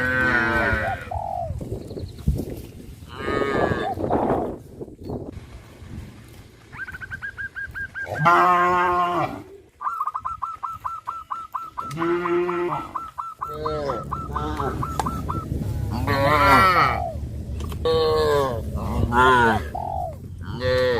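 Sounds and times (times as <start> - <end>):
cows mooing: 0.0 - 1.1, 3.1 - 4.0, 8.0 - 9.5, 11.6 - 17.2, 17.8 - 19.8, 20.4 - 20.9
fast high repeated calls: 9.8 - 15.5.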